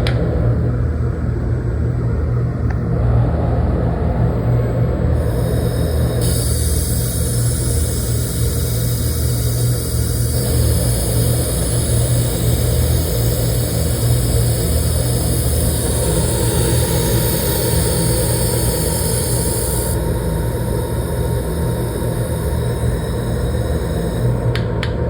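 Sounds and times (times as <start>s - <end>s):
low machine hum: 0.0s - 25.0s
hiss: 5.2s - 24.7s.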